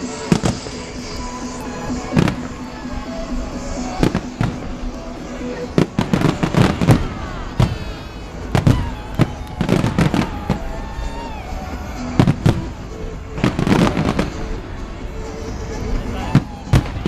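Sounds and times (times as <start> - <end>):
fireworks bangs and crackling: 0.0 - 17.0.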